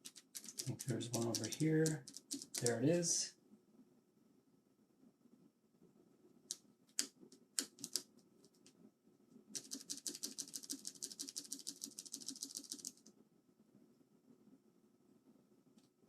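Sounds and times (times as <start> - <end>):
plastic keycaps clicking: 0.0 - 2.8, 7.6 - 8.0.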